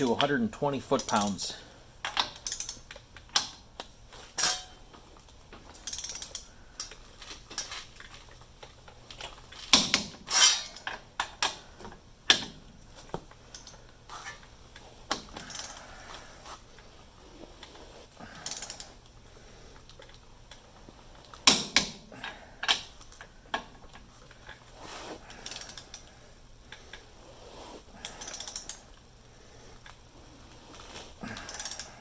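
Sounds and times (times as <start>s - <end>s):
torque wrench ratcheting: 5.8s - 6.9s, 31.3s - 32.0s.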